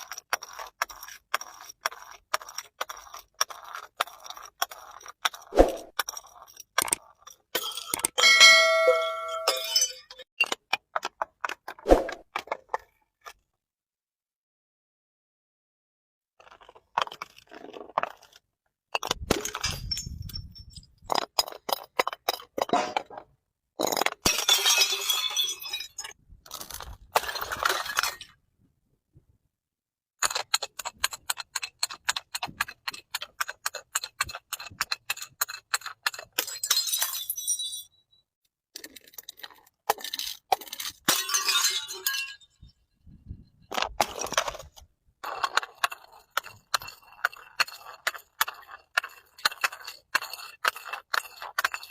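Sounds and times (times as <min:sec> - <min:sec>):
glass bottles breaking and crushing: 0:06.8 - 0:10.5, 0:19.0 - 0:28.4, 0:36.2 - 0:38.0, 0:39.9 - 0:42.8.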